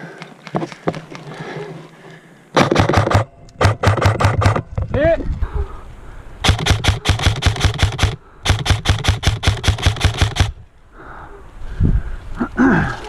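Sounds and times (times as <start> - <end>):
airsoft gun firing rapidly: 2.6 - 4.6, 6.4 - 10.6.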